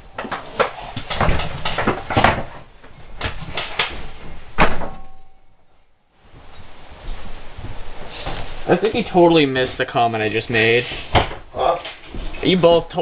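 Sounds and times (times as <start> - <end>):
knocks and clatter: 0.0 - 5.4.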